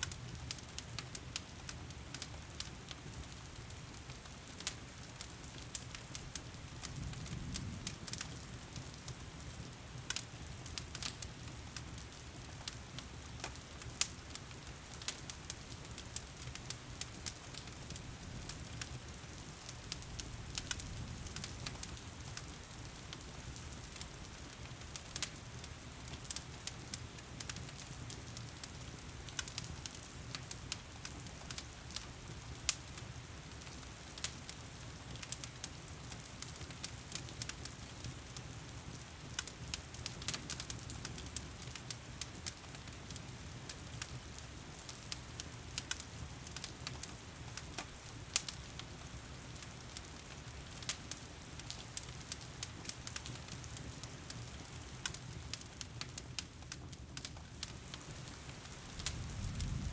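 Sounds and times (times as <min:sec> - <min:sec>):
wood fire crackling and popping: 0:00.0 - 0:59.9
heavy rain hiss: 0:58.8 - 0:59.9.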